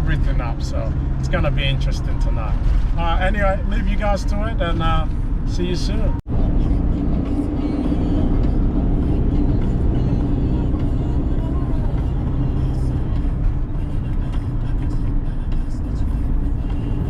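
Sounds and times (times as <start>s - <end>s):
road and engine rumble in car: 0.0s - 17.0s.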